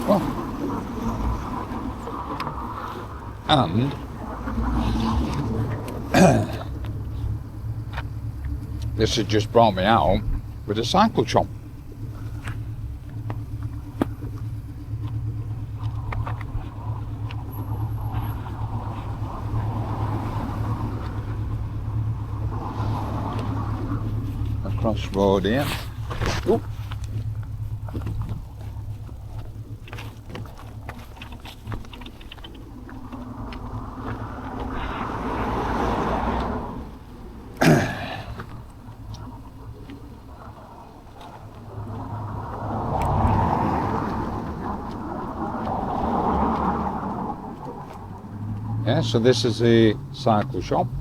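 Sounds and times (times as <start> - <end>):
car passing by: 0.0 - 51.0
electric tricycle humming: 0.0 - 51.0
tricycle clicks and rattles: 23.2 - 35.4.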